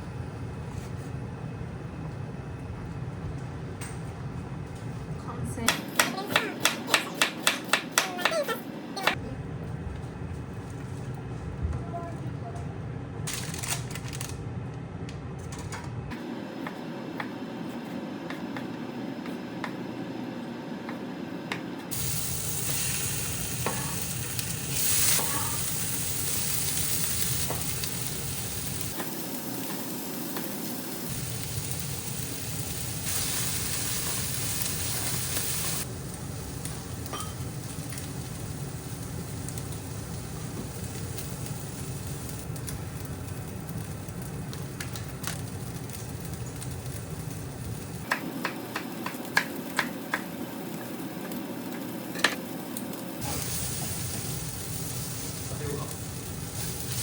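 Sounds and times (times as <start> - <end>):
food sizzling in a pan: 21.9 - 57.0.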